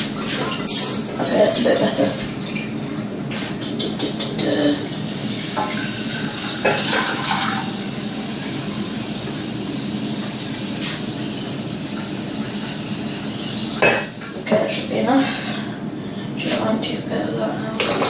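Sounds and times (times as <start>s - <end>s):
tap water filling saucepan: 5.4s - 7.7s.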